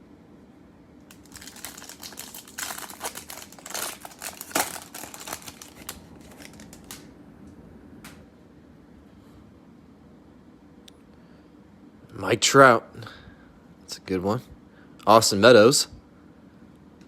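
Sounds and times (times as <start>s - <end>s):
foil wrapper crinkling and tearing: 1.1s - 7.1s.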